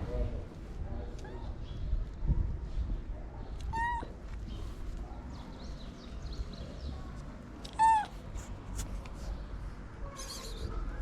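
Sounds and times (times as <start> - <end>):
cat meowing: 3.6 - 4.1, 7.7 - 8.2, 10.1 - 10.8.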